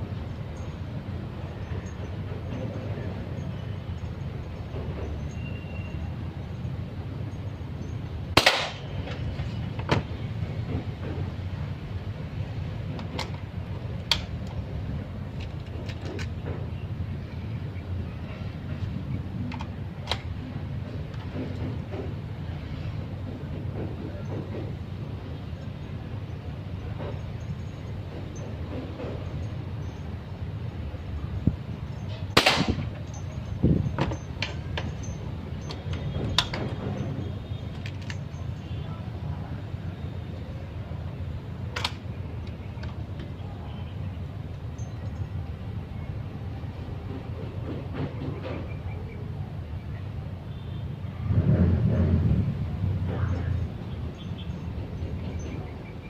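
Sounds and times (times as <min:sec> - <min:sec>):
sharp crack: 0:08.3 - 0:09.0, 0:32.3 - 0:33.0
air rifle shots: 0:08.4 - 0:08.9, 0:32.4 - 0:32.9.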